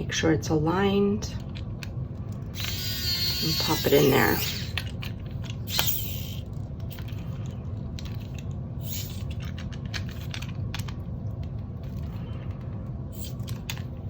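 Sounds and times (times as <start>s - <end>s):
steady low hum: 0.0s - 14.0s
small metal hardware clicking: 4.0s - 7.1s.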